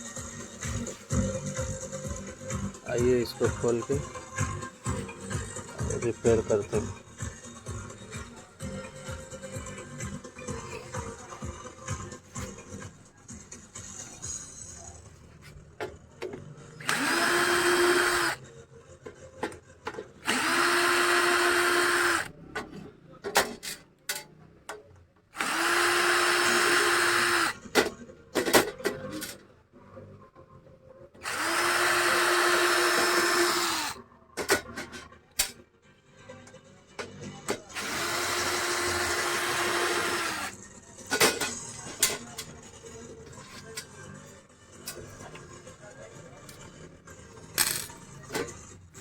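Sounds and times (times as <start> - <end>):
electric drill-driver running: 16.8 - 18.4, 20.2 - 22.3, 25.4 - 27.6, 31.2 - 34.0, 37.8 - 40.6.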